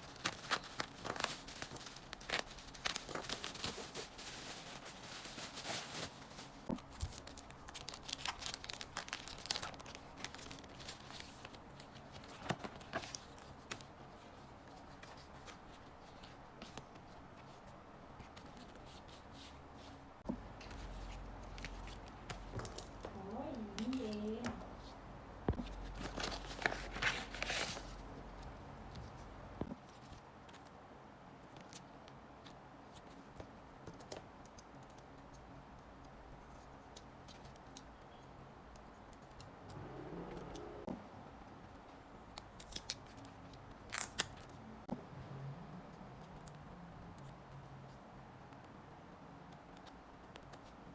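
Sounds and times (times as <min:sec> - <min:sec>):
cards rustling and ticking: 0:00.0 - 0:19.4, 0:20.3 - 0:30.8.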